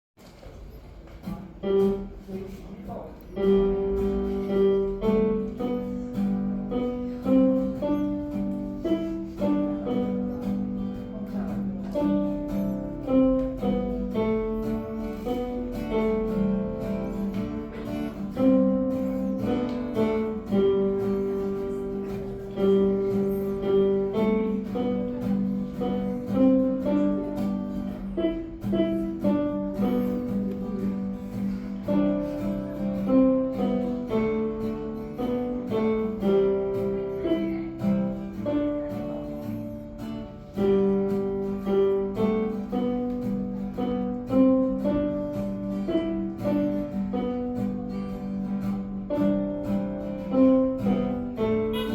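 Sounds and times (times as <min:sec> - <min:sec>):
acoustic guitar melody: 0:00.2 - 0:51.9.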